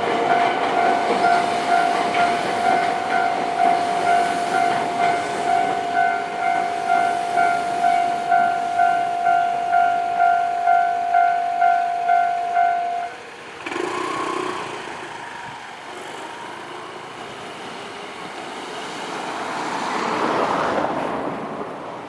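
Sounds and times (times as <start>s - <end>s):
level crossing warning bell: 0.0s - 13.9s
traffic noise: 0.0s - 22.0s.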